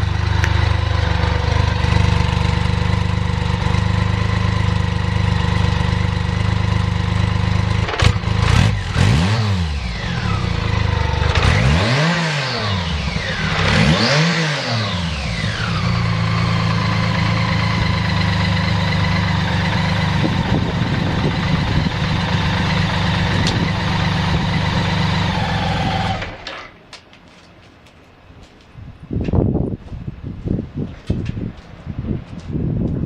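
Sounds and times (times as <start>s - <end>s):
motorcycle engine idling: 0.0s - 9.0s, 9.6s - 11.5s, 14.8s - 26.4s.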